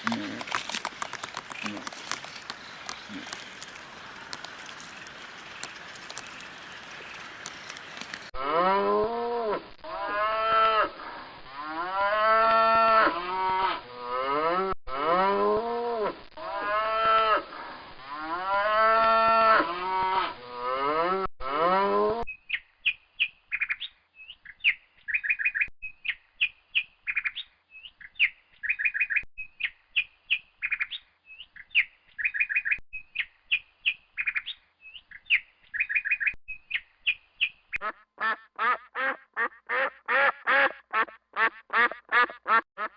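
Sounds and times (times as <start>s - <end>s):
small bird chirping rapidly: 22.3s - 37.8s.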